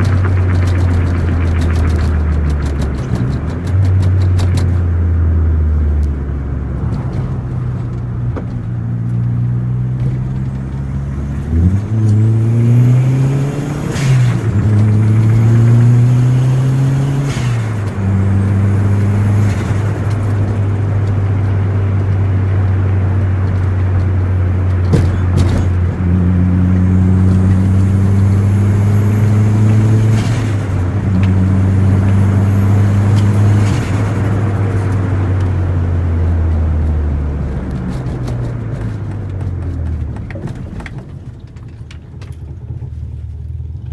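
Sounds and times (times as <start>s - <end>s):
turbo flutter: 0.0s - 4.9s
car engine accelerating: 0.0s - 43.9s.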